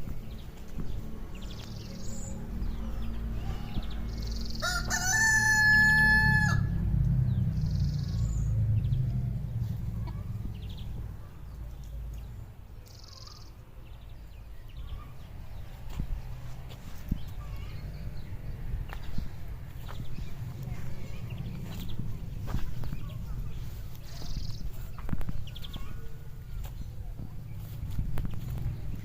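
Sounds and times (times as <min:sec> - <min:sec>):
steady low rumble: 0:00.0 - 0:04.9, 0:06.5 - 0:12.9, 0:13.7 - 0:29.0
rooster crowing: 0:04.6 - 0:06.8.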